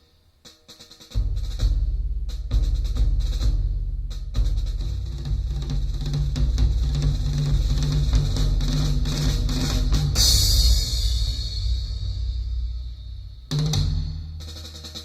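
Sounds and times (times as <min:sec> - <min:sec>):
drum-heavy music through loudspeaker: 0:00.0 - 0:15.0
cymbal crash: 0:09.8 - 0:14.5.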